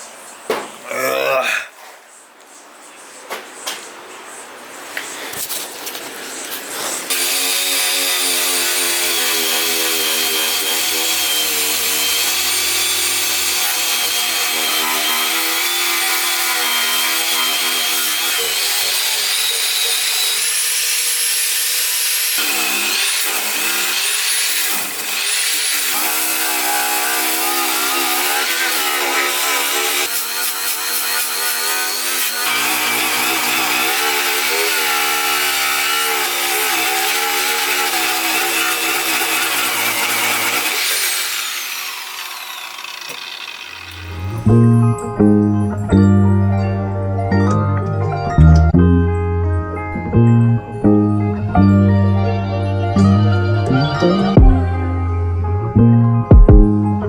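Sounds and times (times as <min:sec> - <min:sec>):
rotary power tool grinding metal: 0:07.1 - 0:44.6.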